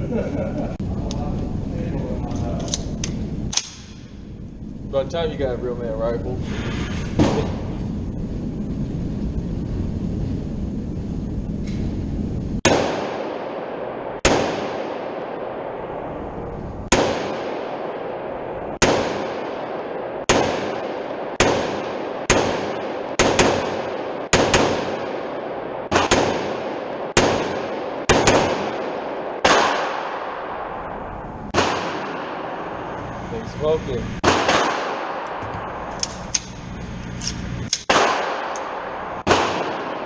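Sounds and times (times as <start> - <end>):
rifle shots with echoing tail: 3.5 - 4.4, 12.6 - 16.2, 16.9 - 33.1, 34.2 - 36.7, 37.4 - 40.0.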